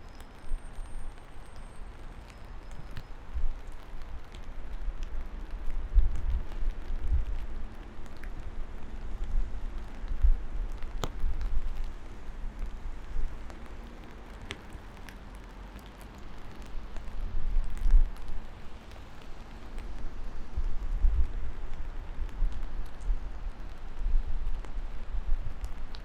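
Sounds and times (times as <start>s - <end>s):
steady rain: 0.0s - 26.0s.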